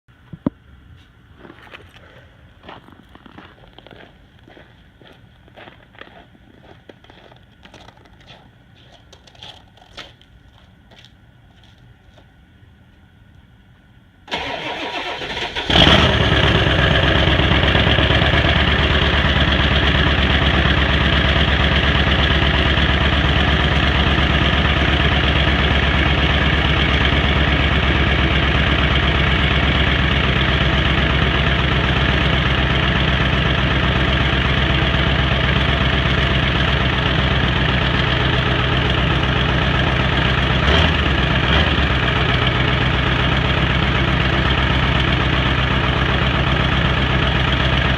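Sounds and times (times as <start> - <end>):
diesel engine cranking: 14.3 - 47.9
diesel engine idling loudly: 14.3 - 47.9.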